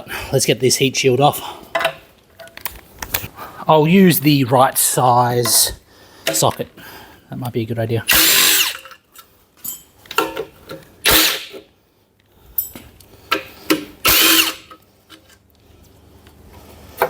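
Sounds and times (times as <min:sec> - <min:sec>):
cordless power tool bursts: 0:08.1 - 0:08.8, 0:11.0 - 0:11.6, 0:14.0 - 0:14.7.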